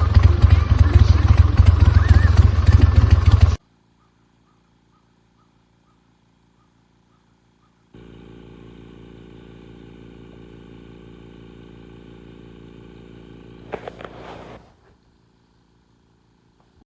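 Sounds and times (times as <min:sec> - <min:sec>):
air compressor humming: 0:07.9 - 0:16.8.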